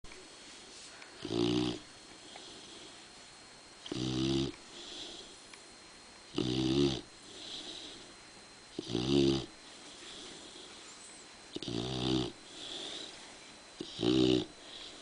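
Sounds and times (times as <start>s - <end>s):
dog snoring: 1.2s - 3.0s, 3.8s - 5.4s, 6.3s - 8.1s, 8.7s - 10.8s, 11.5s - 13.2s, 13.8s - 15.0s
soft dog breaths: 7.2s - 8.2s, 9.6s - 11.0s, 12.4s - 13.9s.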